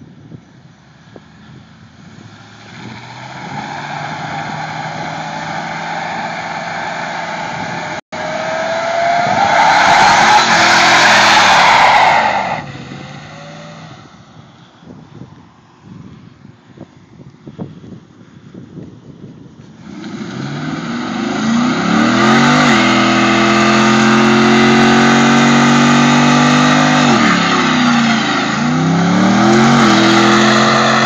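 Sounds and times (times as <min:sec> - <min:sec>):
engine revving: 0:02.2 - 0:14.1, 0:19.9 - 0:31.0.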